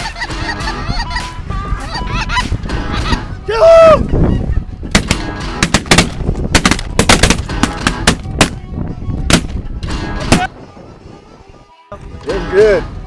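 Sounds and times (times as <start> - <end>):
geese honking: 0.0 - 6.2
shotgun blasts: 4.9 - 8.6, 9.3 - 9.6.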